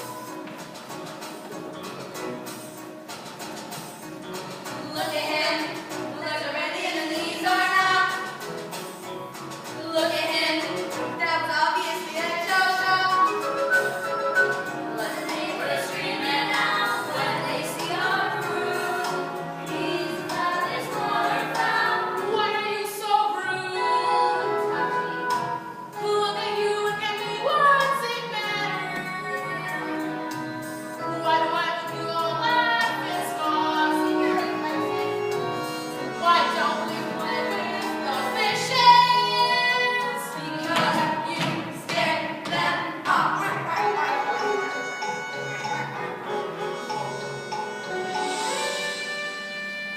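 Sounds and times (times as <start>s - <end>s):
backing music: 0.0s - 49.9s
young voices singing together: 14.6s - 30.5s, 36.1s - 44.5s.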